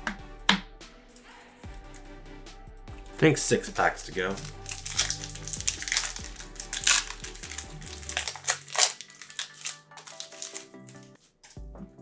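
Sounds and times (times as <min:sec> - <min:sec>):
background music: 0:00.0 - 0:12.0
cards handled: 0:03.5 - 0:11.6
foil wrapper crinkling: 0:03.5 - 0:11.6.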